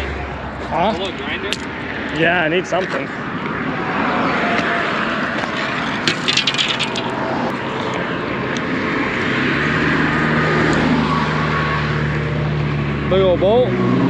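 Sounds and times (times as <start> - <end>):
engine drone of passing traffic: 0.0 - 14.0
quick run of clicks: 5.3 - 8.0.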